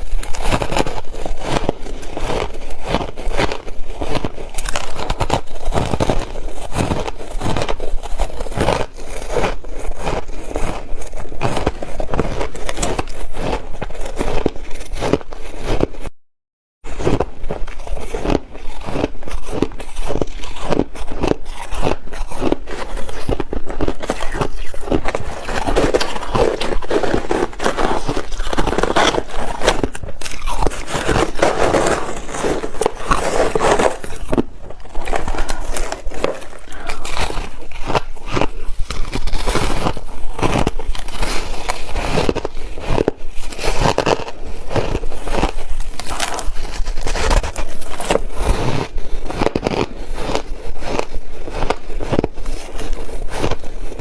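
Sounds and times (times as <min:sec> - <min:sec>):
person chewing ice: 0:00.0 - 0:16.2, 0:16.9 - 0:54.0.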